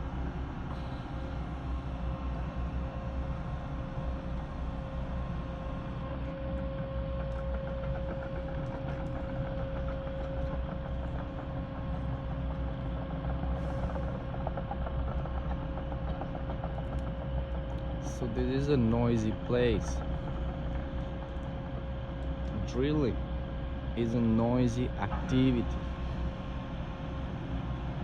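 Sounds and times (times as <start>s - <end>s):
drilling rig engines rumbling: 17.9s - 21.7s, 23.8s - 26.6s.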